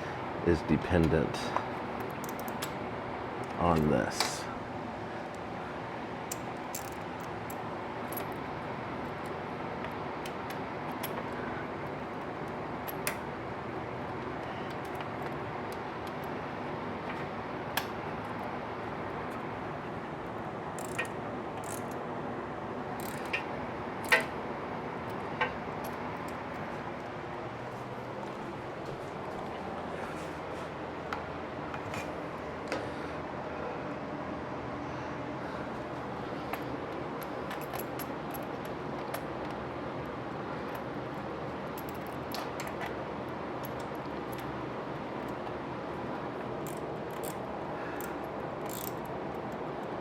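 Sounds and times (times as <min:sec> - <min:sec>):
plastic and metal parts clicking: 0:48.0 - 0:49.0.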